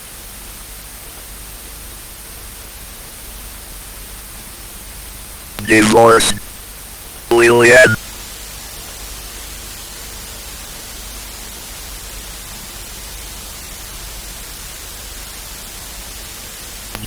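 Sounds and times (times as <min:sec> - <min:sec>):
static hiss: 0:05.6 - 0:06.6, 0:07.3 - 0:08.0, 0:16.8 - 0:17.0.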